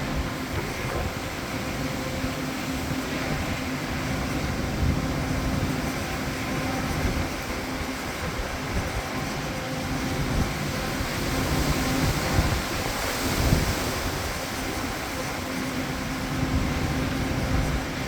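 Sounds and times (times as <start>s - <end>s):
storm wind buffeting microphone: 0.0s - 18.0s.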